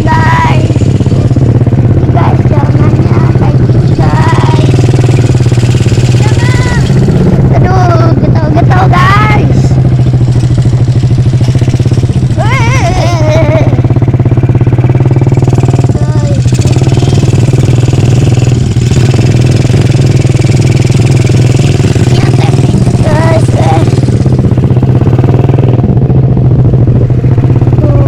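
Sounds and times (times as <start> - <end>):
person calling out: 0.0 - 0.8, 2.1 - 4.8, 6.2 - 7.0, 12.3 - 13.7, 15.8 - 16.5, 22.1 - 24.0
engine running: 0.0 - 28.0.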